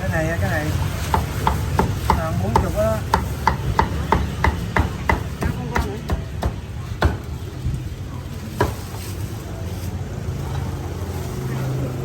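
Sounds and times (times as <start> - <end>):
cleaver chopping meat: 1.0 - 7.3.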